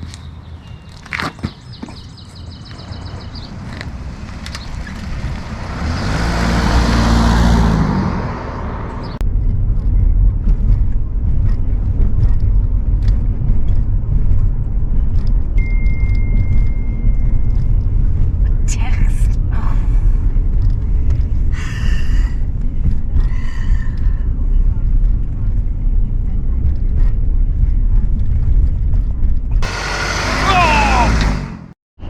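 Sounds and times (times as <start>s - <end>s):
pickup engine revving: 3.5s - 9.2s, 29.6s - 31.8s.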